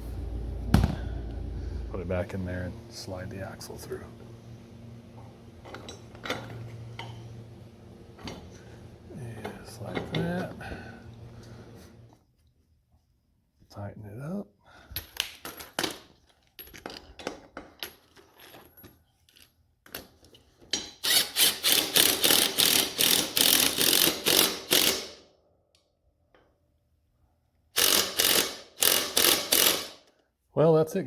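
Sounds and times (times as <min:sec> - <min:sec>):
impact driver rattling: 0:21.0 - 0:25.2, 0:27.8 - 0:30.0.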